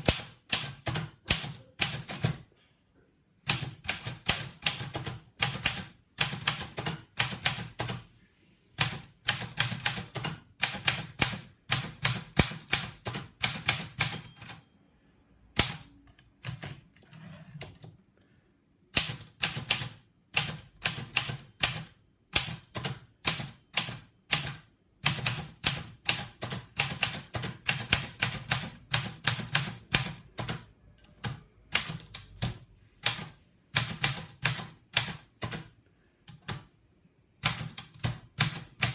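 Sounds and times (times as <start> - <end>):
typewriter keystrikes: 0.0 - 2.4, 8.8 - 14.7
faint mechanical sounds: 0.0 - 24.7
typewriter bell ring: 13.9 - 14.8.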